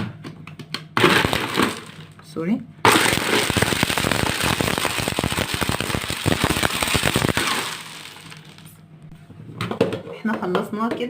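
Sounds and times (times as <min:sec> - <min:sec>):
electric food chopper running: 0:01.0 - 0:02.0, 0:02.8 - 0:08.8
pieces rattling in bowl: 0:01.0 - 0:02.2, 0:02.9 - 0:08.7.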